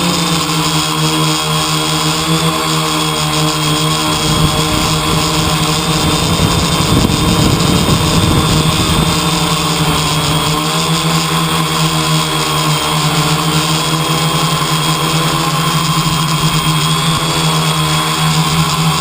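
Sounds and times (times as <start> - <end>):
steady mechanical hum: 0.0 - 19.0
wind rumble on microphone: 3.7 - 10.7.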